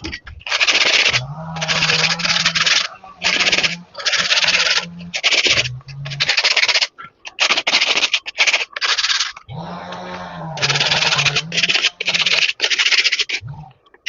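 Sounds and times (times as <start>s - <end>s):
hand scraping strokes: 0.0s - 14.0s.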